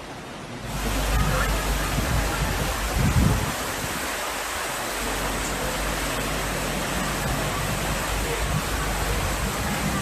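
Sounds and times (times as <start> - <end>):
floodwater rushing: 0.0 - 10.0.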